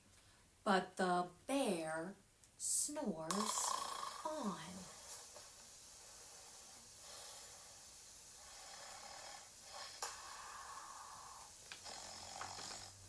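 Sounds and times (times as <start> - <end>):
person imitating snoring: 3.3 - 5.0, 8.4 - 13.0.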